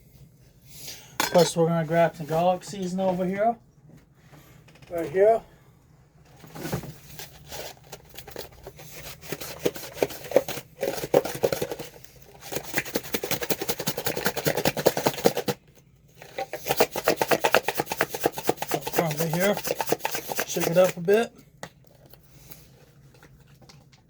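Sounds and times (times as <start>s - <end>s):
seasoning shaker rattling: 16.6s - 21.1s.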